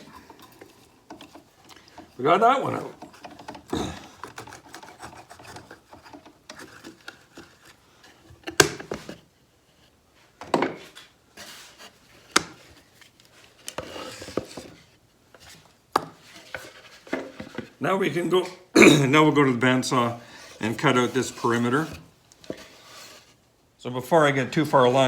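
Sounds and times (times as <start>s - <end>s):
wood rubbing and sliding: 0.0s - 9.2s, 19.7s - 23.4s.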